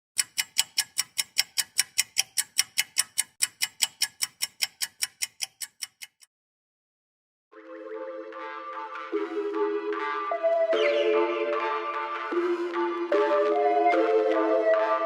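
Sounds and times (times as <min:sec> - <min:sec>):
rapid ticking with ringing tone: 0:00.2 - 0:06.3.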